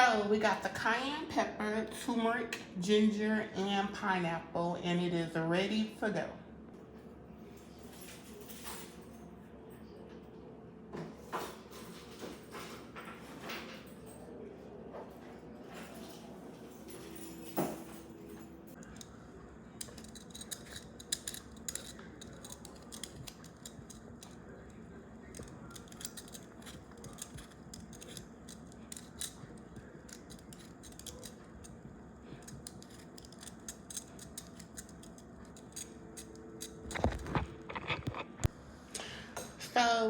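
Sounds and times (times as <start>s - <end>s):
knife scraping and cutting produce: 19.8s - 38.5s.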